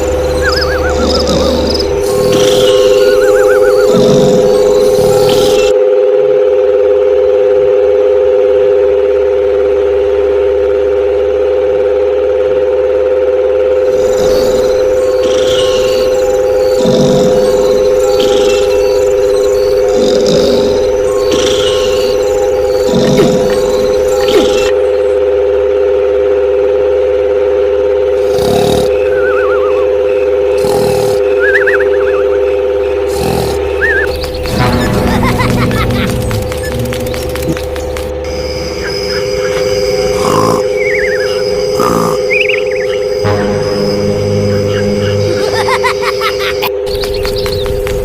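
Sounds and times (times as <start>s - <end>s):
warbling bird-like trills: 0.0s - 5.8s, 13.8s - 25.5s, 28.2s - 48.0s
low hum: 28.9s - 48.0s
small electric motor whine: 35.7s - 47.5s.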